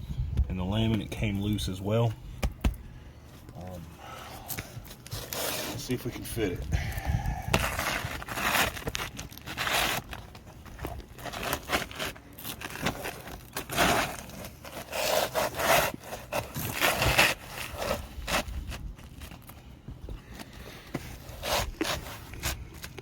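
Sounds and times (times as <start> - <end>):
roof shingle scraping: 4.6 - 6.8, 7.5 - 19.6, 20.2 - 23.0.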